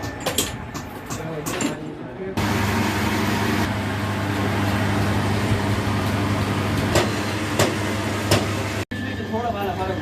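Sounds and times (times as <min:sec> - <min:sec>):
machine humming: 0:02.4 - 0:10.0.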